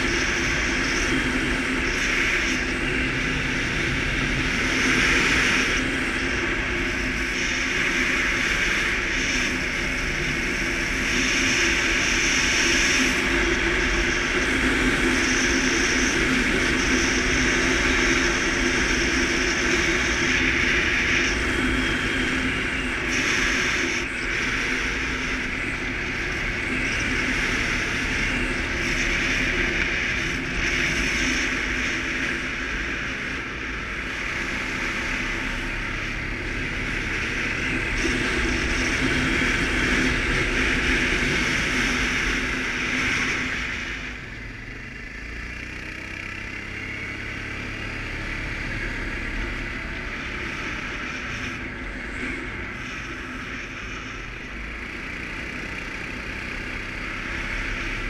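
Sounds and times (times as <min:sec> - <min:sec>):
atv engine running: 0:00.0 - 0:58.0
rushing noise: 0:00.0 - 0:58.0.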